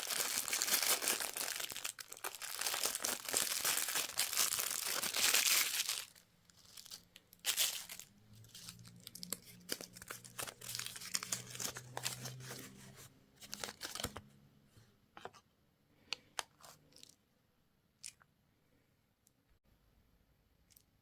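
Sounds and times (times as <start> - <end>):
plastic wrapper crinkling: 0.0 - 12.8, 13.4 - 14.2.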